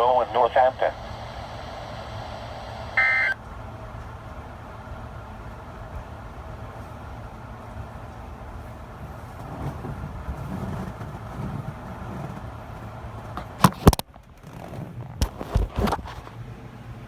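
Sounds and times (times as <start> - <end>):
low vehicle rumble: 1.2 - 13.6.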